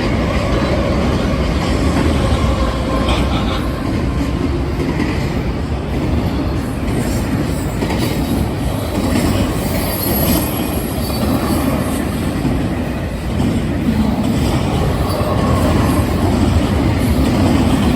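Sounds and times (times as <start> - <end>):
train wheels rumbling on track: 0.0 - 17.9
faint high wheel squeal: 9.6 - 11.8.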